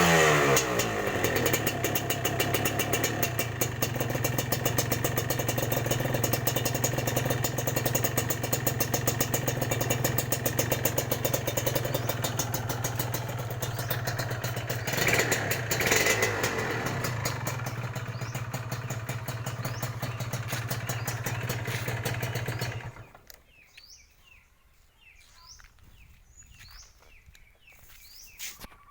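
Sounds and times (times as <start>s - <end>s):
motorcycle idling with crackle: 0.6s - 23.9s
faint bird chirps: 22.4s - 28.9s.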